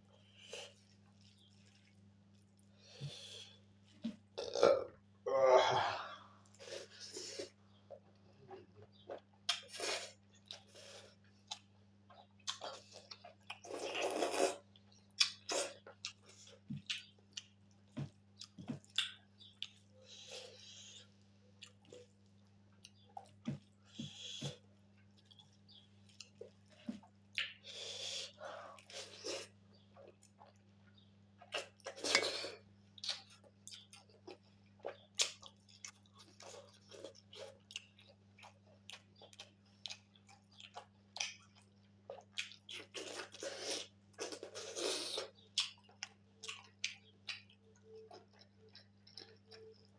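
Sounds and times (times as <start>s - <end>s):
person chewing food: 0.0s - 4.9s, 6.3s - 49.9s
faint steady hum: 0.0s - 49.9s.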